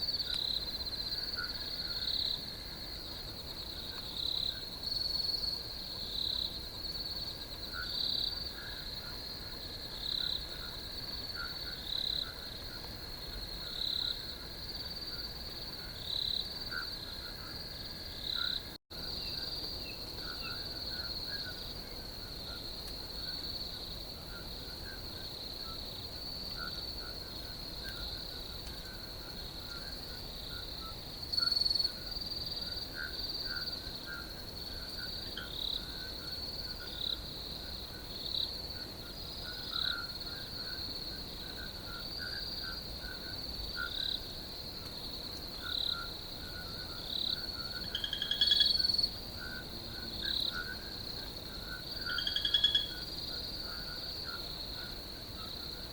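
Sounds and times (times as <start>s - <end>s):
crickets chirping: 0.0s - 55.9s
pulsing insect chorus: 0.0s - 55.9s.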